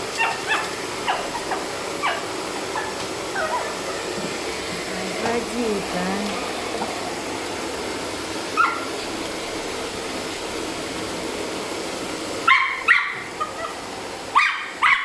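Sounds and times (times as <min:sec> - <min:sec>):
vacuum cleaner running: 0:00.0 - 0:15.0
puppy barking: 0:00.1 - 0:03.8, 0:08.5 - 0:09.0, 0:12.4 - 0:15.0.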